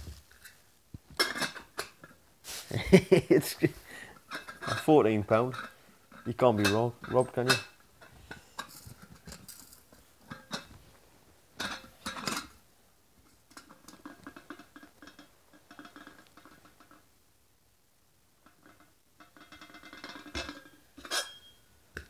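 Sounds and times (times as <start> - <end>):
pans and lids clinking: 1.1 - 2.2, 4.3 - 10.8, 11.6 - 12.6, 13.4 - 17.0, 18.4 - 21.7.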